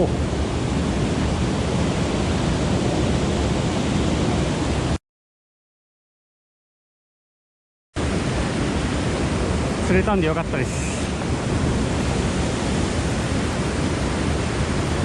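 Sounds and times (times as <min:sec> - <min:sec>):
mountain stream flowing: 0:08.0 - 0:15.0.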